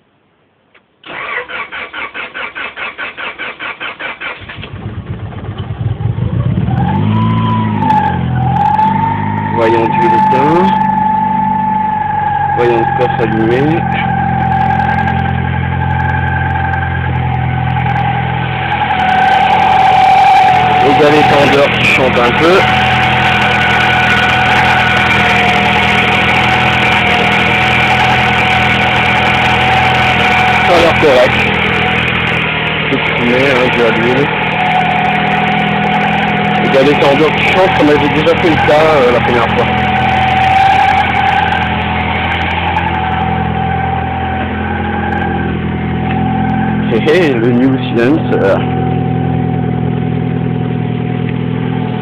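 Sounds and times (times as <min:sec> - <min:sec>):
car engine cranking and starting: 0:00.7 - 0:52.0
high whine of pulleys: 0:06.6 - 0:52.0.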